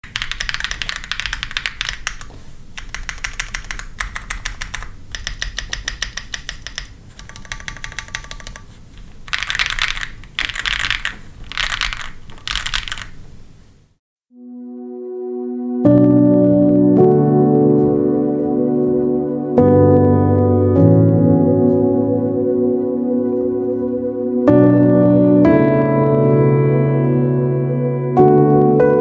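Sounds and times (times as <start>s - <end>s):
mechanical keyboard typing: 0.0s - 13.6s.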